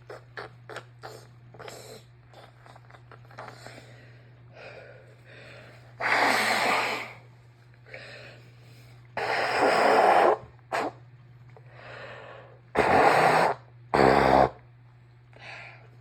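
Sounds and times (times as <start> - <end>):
woman blowing nose: 6.0 - 7.2, 9.2 - 11.0, 12.8 - 14.6
woman sniffing: 6.0 - 7.2, 9.2 - 11.0.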